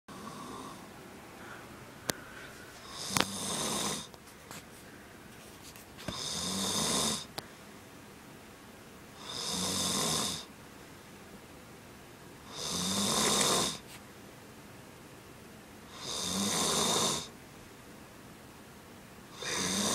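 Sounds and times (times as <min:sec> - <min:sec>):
man snoring: 0:00.1 - 0:00.8, 0:02.8 - 0:04.1, 0:06.1 - 0:07.3, 0:09.2 - 0:10.5, 0:12.5 - 0:13.8, 0:15.9 - 0:17.3, 0:19.3 - 0:19.9
quiet breaths: 0:00.1 - 0:07.9, 0:12.4 - 0:14.1, 0:19.2 - 0:19.9.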